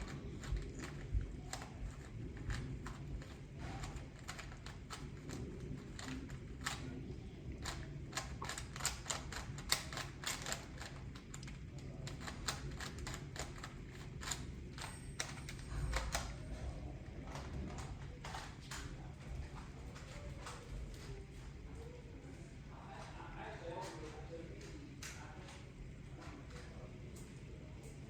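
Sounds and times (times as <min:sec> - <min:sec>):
rapid irregular clicking: 0:00.0 - 0:20.6
steady low hum: 0:00.0 - 0:28.0.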